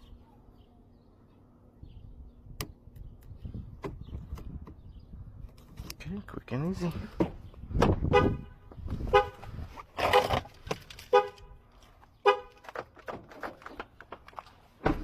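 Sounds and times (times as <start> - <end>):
car horn honking: 8.0 - 9.5, 11.1 - 11.6, 12.2 - 12.6.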